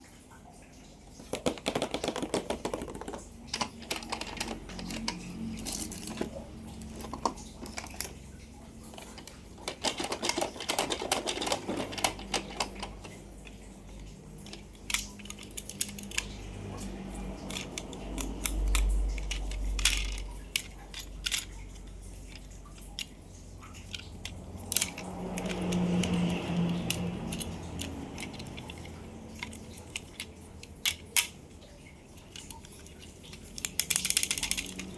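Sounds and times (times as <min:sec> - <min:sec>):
crinkling plastic and cardboard: 0:01.1 - 0:34.9
sharp taps and clicks: 0:01.2 - 0:08.1.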